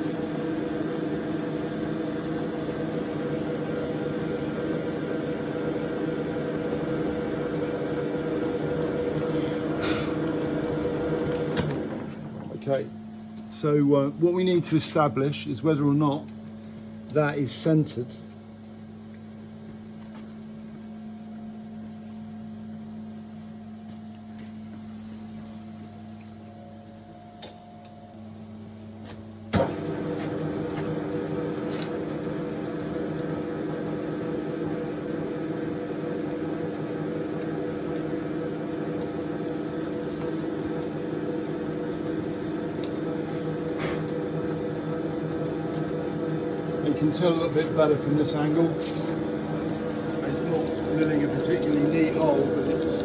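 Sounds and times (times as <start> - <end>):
milling machine running: 0.0 - 18.0, 29.5 - 53.0.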